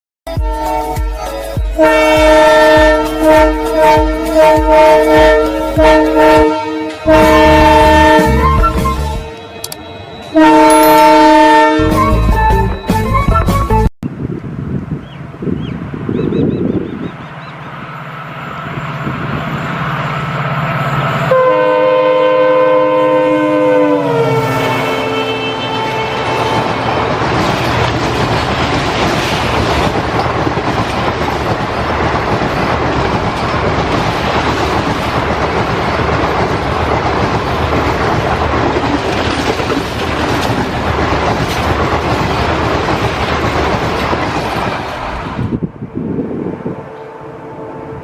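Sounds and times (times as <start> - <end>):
thumping drum beat: 0.3 - 9.2
diesel locomotive horn blowing: 0.3 - 13.9, 20.8 - 27.3, 45.8 - 48.0
diesel locomotive engine rumble: 0.3 - 48.0.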